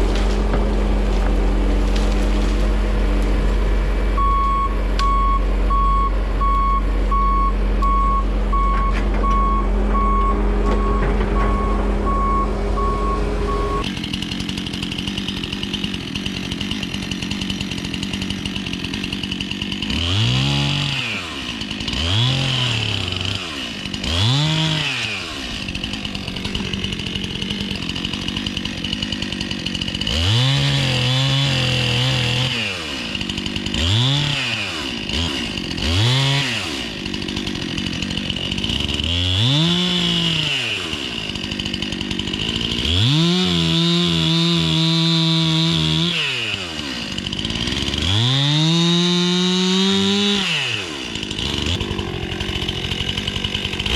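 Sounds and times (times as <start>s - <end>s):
chainsaw revving: 0.0s - 6.3s, 9.3s - 53.9s
skid steer engine running: 0.0s - 53.9s
reversing alarm beeping: 4.2s - 13.8s.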